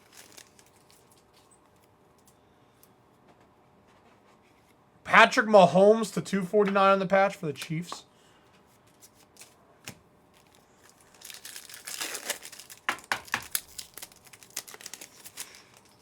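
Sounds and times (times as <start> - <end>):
wrapper tearing and crinkling: 0.0 - 1.4, 10.3 - 16.0
cards being handled: 7.6 - 7.9.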